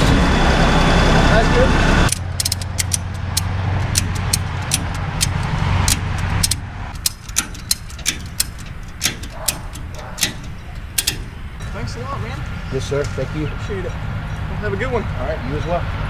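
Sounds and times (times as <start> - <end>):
vehicle engine idling: 0.0 - 16.0
sharp irregular clicks: 2.1 - 11.6.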